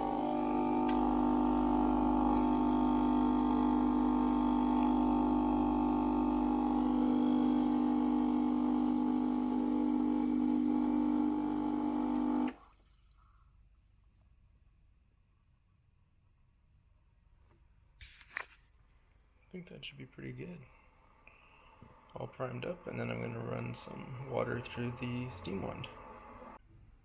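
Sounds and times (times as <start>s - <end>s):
espresso machine pump humming: 0.0s - 12.6s, 21.0s - 26.6s.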